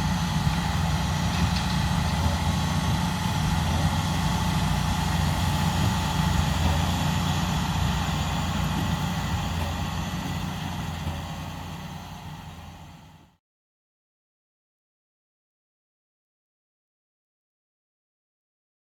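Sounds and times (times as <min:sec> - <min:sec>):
tractor diesel engine rumbling: 0:00.0 - 0:13.4.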